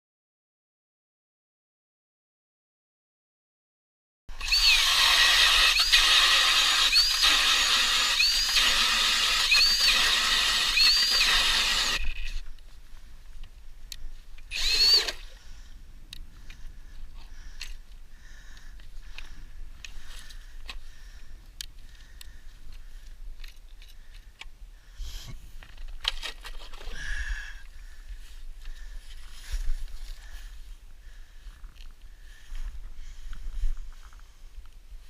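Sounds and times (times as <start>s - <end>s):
hammer drill whining: 4.3s - 12.4s, 14.5s - 15.3s.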